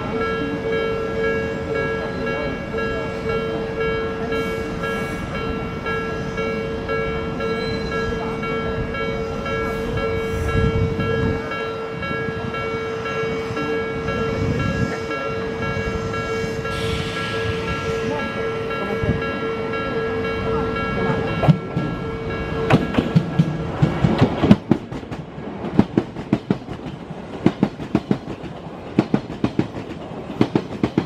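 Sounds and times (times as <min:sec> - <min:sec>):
level crossing bell ringing: 0:00.0 - 0:23.2
electric train rumble: 0:00.0 - 0:31.0.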